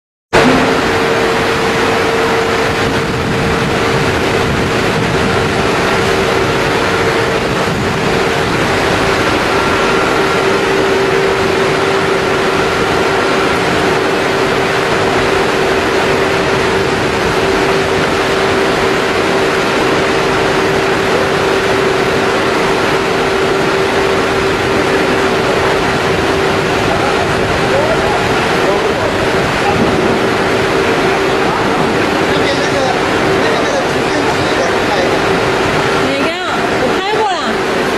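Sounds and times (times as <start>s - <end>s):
loud machinery roar: 0.3s - 37.9s
constant humming tone: 0.4s - 37.9s.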